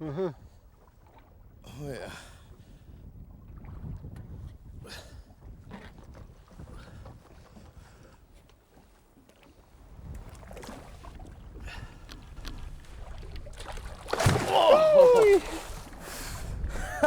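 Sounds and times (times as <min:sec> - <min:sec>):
wind rumbling on microphone: 0:00.4 - 0:08.4, 0:09.7 - 0:17.0
water splashes and knocks: 0:03.3 - 0:04.6, 0:05.4 - 0:16.6.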